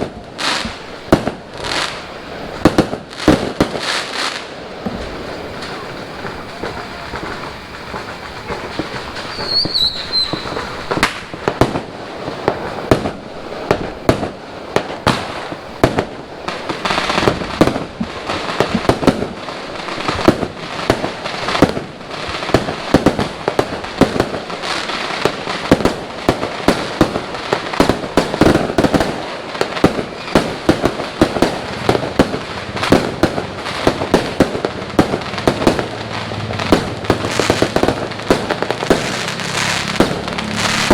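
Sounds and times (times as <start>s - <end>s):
falling firework whistle: 0.0s - 16.1s, 29.8s - 40.9s
fireworks bangs: 0.0s - 40.9s.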